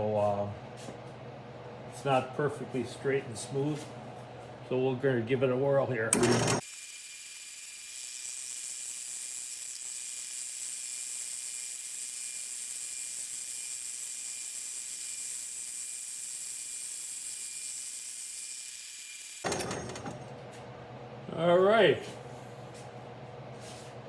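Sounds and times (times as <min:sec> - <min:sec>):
milling machine cutting metal: 0:06.1 - 0:16.5, 0:17.2 - 0:20.2.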